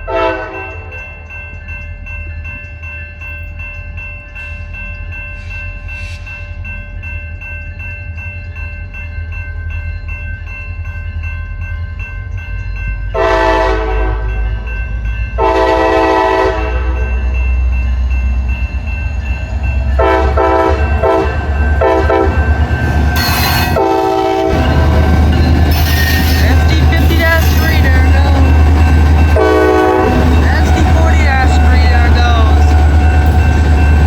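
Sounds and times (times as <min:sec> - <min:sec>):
train horn blasts: 0:00.0 - 0:01.0, 0:13.2 - 0:14.3, 0:15.4 - 0:17.1, 0:20.0 - 0:22.4, 0:23.2 - 0:28.2, 0:29.3 - 0:31.8
diesel locomotive engine rumble: 0:11.1 - 0:34.0.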